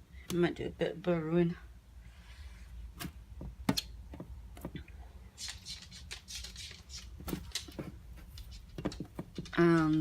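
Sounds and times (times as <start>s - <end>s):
clicks and taps on plastic: 3.4s - 4.9s.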